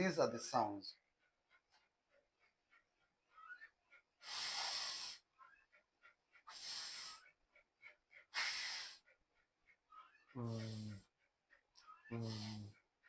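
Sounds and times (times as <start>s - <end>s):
man pronouncing hissing consonant: 4.2s - 5.2s, 10.4s - 11.1s, 12.1s - 12.8s.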